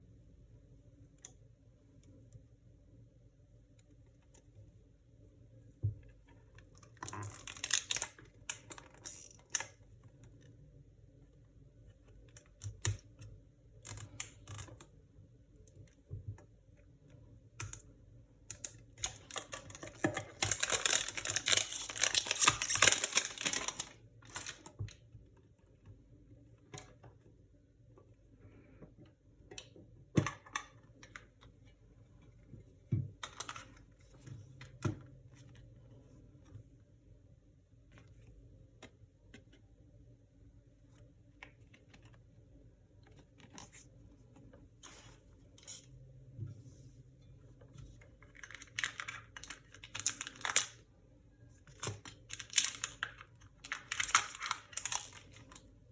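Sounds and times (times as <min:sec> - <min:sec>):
packaging rustling: 0:19.0 - 0:24.7, 0:48.4 - 0:50.8, 0:51.7 - 0:55.6.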